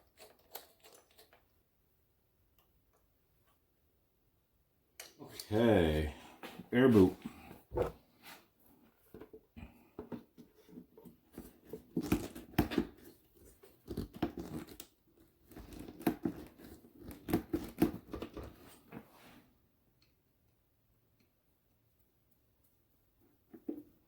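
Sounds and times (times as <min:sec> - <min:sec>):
rubber rubbing and scraping: 0:07.0 - 0:08.4.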